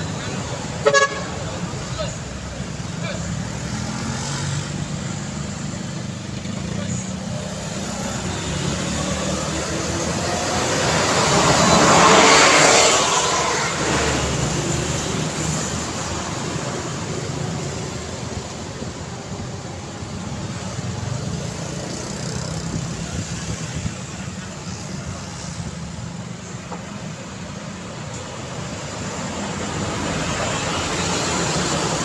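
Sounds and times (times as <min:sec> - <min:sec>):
road traffic rumble: 0:00.0 - 0:32.0
vehicle passing close: 0:06.4 - 0:24.1.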